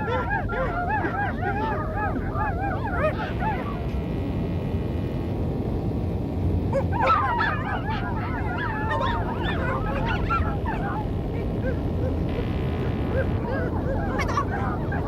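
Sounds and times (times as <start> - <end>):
monkeys chattering: 0.0 - 3.8, 7.1 - 12.5, 13.1 - 15.0
steady low rumble: 0.0 - 15.0.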